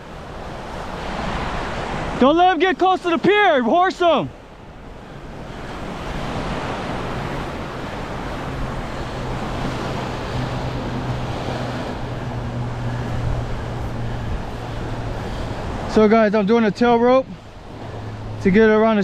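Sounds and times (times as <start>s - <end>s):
surf washing on beach: 0.0s - 19.0s
wind buffeting microphone: 4.4s - 19.0s.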